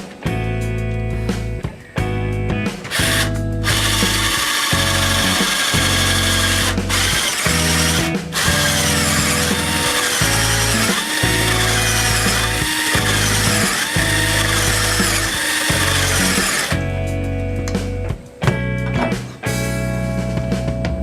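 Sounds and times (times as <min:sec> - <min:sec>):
blues music: 0:00.0 - 0:21.0
power drill driving screws: 0:02.9 - 0:16.8.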